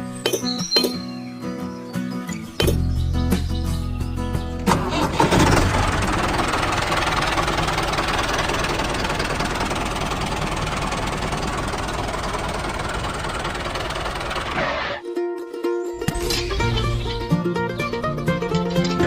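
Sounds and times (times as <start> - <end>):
engine running: 2.7 - 15.0.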